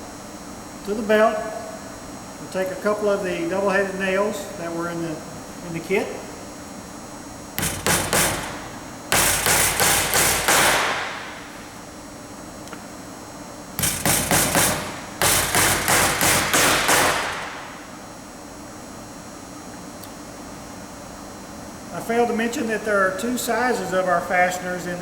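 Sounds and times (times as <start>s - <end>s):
hammer ringing: 7.6s - 11.5s, 13.8s - 17.9s
hammer hitting nails: 7.6s - 11.6s, 13.8s - 17.9s.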